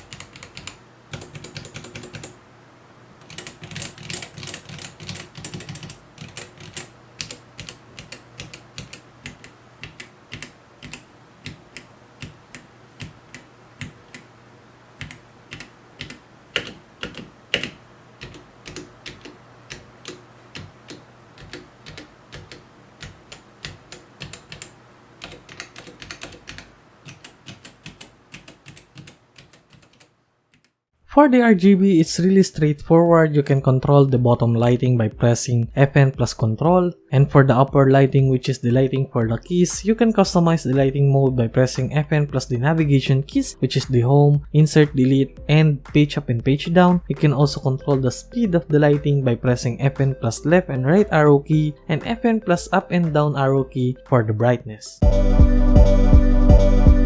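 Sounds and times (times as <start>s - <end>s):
mechanical keyboard typing: 0.0s - 2.4s, 3.2s - 14.3s, 15.0s - 30.7s.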